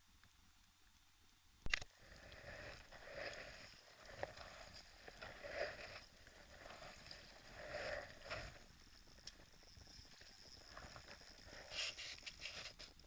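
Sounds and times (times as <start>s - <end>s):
water lapping against kayak: 1.9s - 9.4s.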